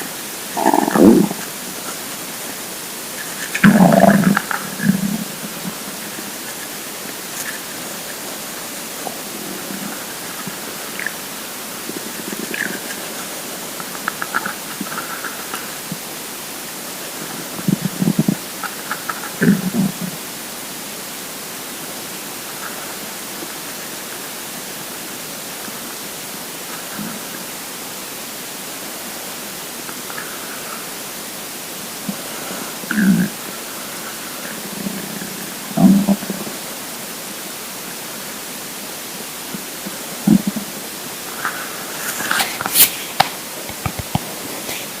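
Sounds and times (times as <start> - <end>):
recording hiss: 0.0 - 45.0
stomach gurgles: 0.4 - 16.1, 17.0 - 20.3, 31.9 - 36.6, 39.5 - 45.0
small pops and clicks: 42.6 - 44.3.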